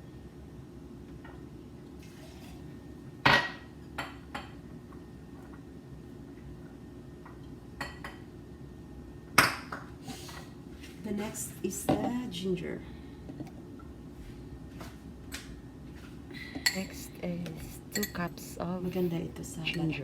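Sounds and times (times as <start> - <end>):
steady low hum: 0.0 - 20.0
utensils and dishes clattering: 17.9 - 18.3.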